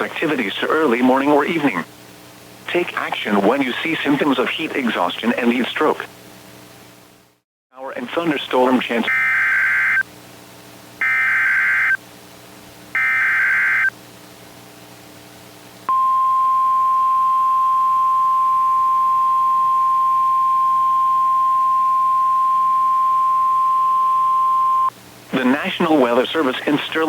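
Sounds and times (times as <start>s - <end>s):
single-pitch warning alarm tone: 9.1s - 10.0s, 11.0s - 12.0s, 13.0s - 13.9s, 15.9s - 24.9s
harsh digital data bursts: 11.0s - 12.0s, 13.0s - 13.9s.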